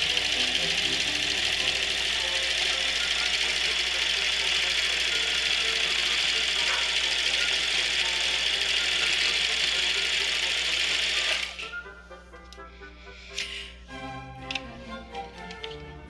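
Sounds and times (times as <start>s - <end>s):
sewing machine running: 0.0s - 11.7s
quiet classical music: 0.0s - 16.0s.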